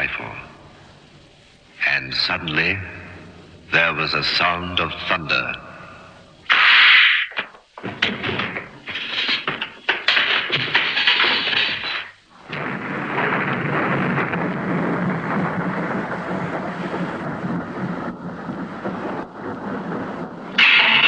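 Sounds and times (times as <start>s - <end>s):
burst of noise: 0.0s - 21.0s
rain-like hiss: 0.0s - 21.0s
rumble of thunder: 7.7s - 21.0s.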